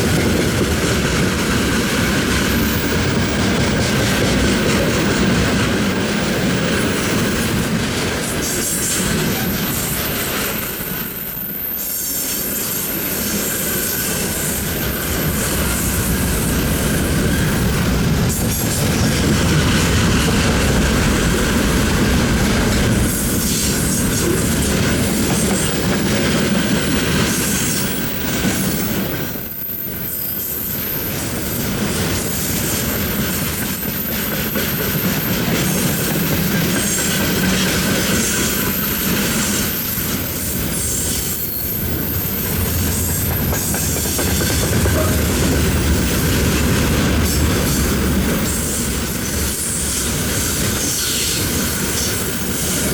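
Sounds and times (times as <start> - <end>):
train wheels rumbling and clattering: 0.0 - 52.9
high wheel squeal: 8.5 - 17.9, 23.1 - 52.9.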